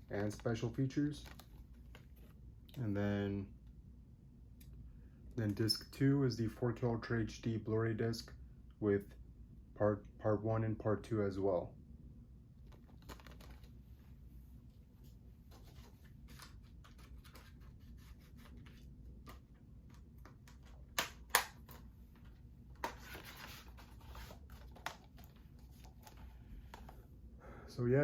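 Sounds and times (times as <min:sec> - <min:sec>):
packaging rustle: 0:01.2 - 0:02.3, 0:12.7 - 0:13.7, 0:22.8 - 0:26.3.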